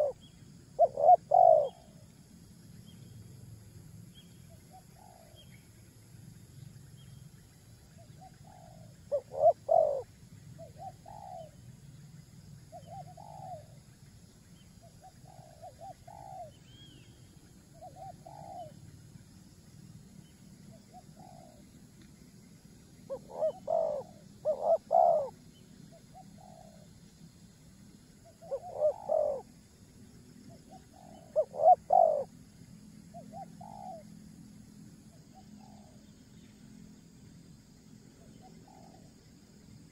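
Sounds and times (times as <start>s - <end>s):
bird calling in low notes: 0.0s - 2.0s, 8.0s - 11.6s, 23.1s - 27.0s, 28.3s - 29.6s, 30.5s - 32.3s.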